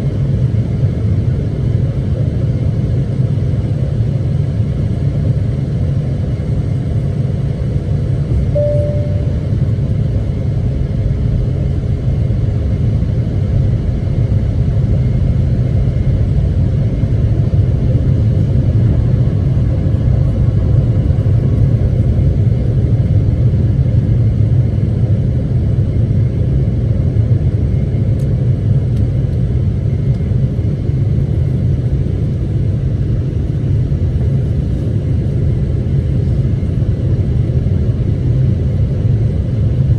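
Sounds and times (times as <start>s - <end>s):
airliner low rumble: 0.0s - 39.9s
short faint tone: 8.6s - 9.6s.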